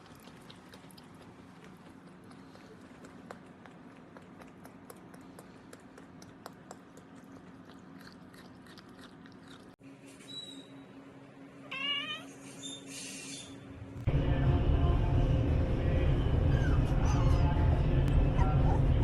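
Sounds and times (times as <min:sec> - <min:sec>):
cat crunching food: 0:00.0 - 0:09.8
short wavering meow: 0:11.7 - 0:12.4.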